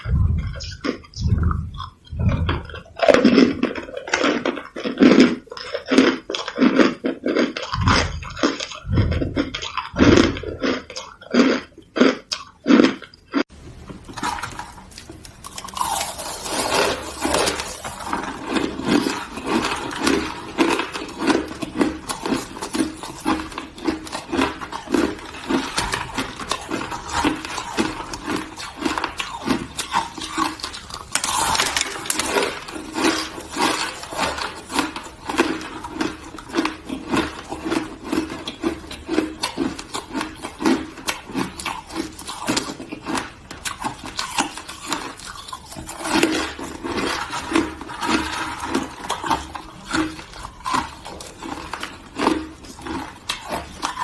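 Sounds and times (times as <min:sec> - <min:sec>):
ice being chewed with crunches: 0:00.0 - 0:54.0.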